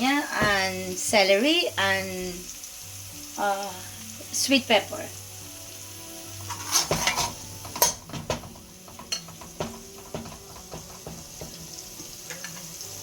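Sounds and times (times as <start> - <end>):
food sizzling in a pan: 0.0 - 13.0
utensil scraping and knocking pan: 6.4 - 12.6.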